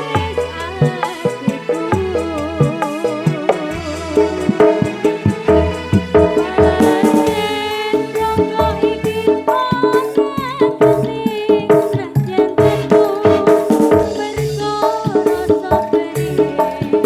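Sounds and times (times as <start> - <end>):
held keyboard notes: 0.0 - 17.0
drum hits: 5.3 - 16.0
pitch-bending lead melody: 12.4 - 14.2.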